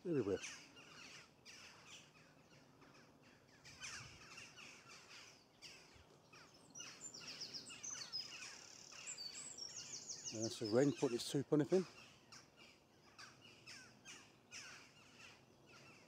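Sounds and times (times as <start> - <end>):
faint jackdaws calling: 0.0 - 16.0
wren trilling song: 0.0 - 16.0.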